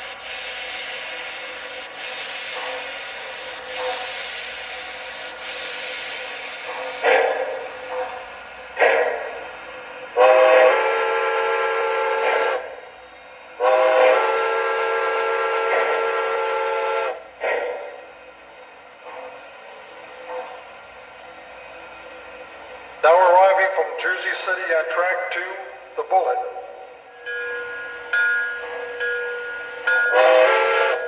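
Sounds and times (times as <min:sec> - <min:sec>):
steam chuff: 0:00.0 - 0:31.0
steam locomotive whistle blasts: 0:10.1 - 0:12.8, 0:13.6 - 0:18.0, 0:27.2 - 0:31.0.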